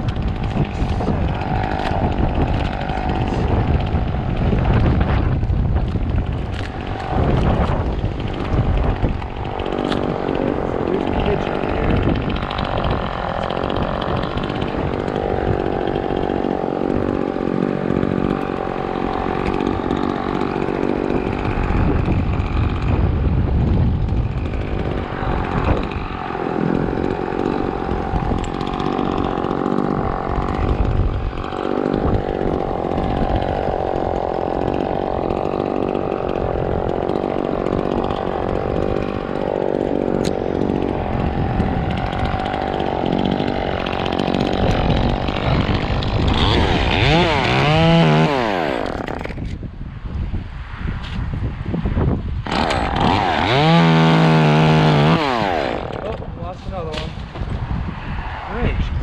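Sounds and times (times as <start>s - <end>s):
chainsaw cutting at high revs: 0.0s - 49.6s, 52.2s - 57.6s.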